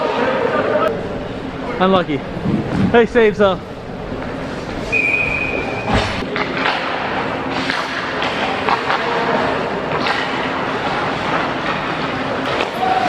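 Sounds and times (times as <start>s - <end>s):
steady high tone: 0.9s - 6.3s.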